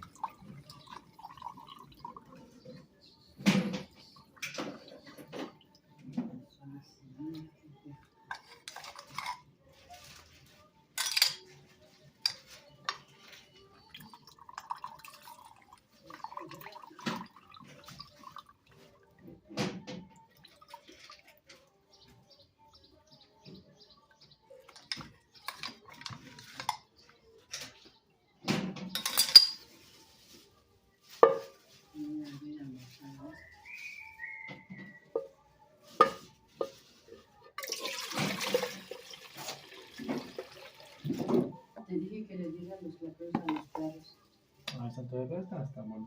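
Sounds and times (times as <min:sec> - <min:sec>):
dishes and utensils clattering: 0:00.0 - 0:06.5, 0:08.1 - 0:22.2, 0:24.6 - 0:29.9, 0:31.1 - 0:31.8, 0:34.4 - 0:41.8, 0:43.3 - 0:44.0.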